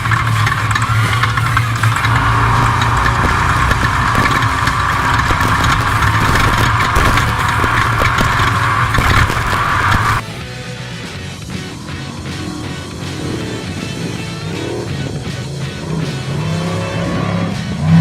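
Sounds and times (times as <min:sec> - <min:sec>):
chassis knocks and rattles: 0:00.0 - 0:10.2
race car engine running: 0:00.0 - 0:18.0.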